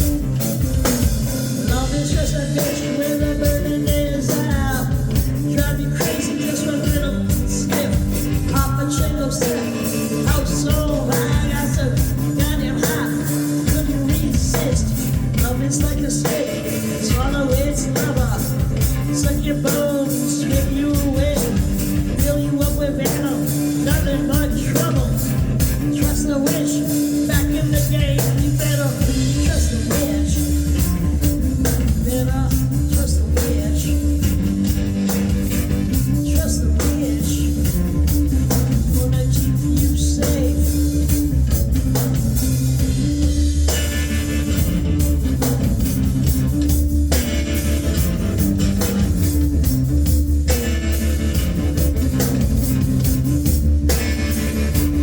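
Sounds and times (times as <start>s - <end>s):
live rock band playing: 0.0s - 55.0s
person singing: 1.5s - 41.3s.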